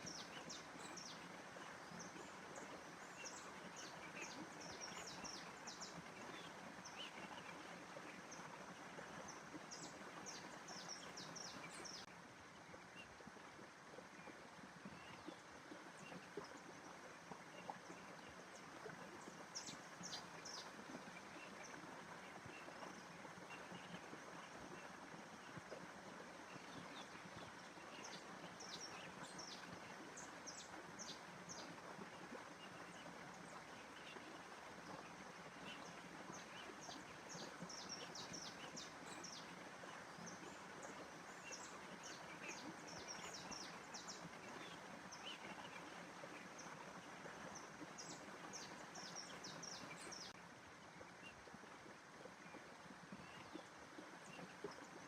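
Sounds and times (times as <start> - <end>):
small birds chirping: 9.2 - 12.1.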